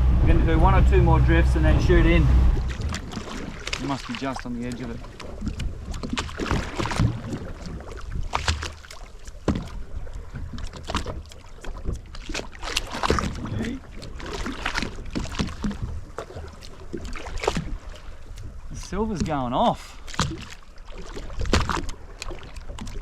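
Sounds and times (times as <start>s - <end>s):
steady low rumble: 0.0s - 3.6s
water slapping against hull: 0.0s - 23.0s.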